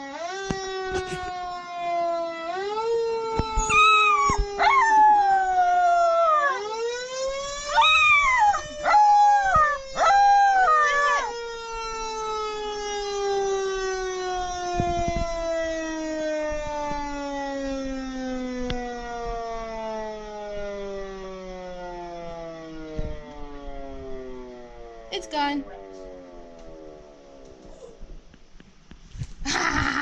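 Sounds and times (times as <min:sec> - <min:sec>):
fire engine siren wailing: 0:00.0 - 0:28.1
puppy howling: 0:03.6 - 0:06.7, 0:07.7 - 0:11.4.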